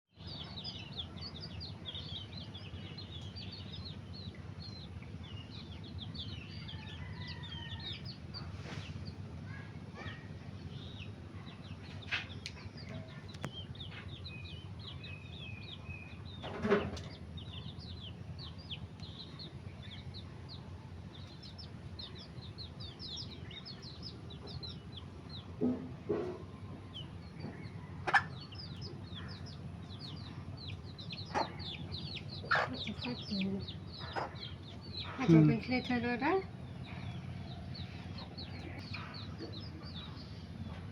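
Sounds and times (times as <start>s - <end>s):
chicks peeping: 0.2s - 40.9s
steady low hum: 0.2s - 40.9s
hen clucking: 15.8s - 40.9s.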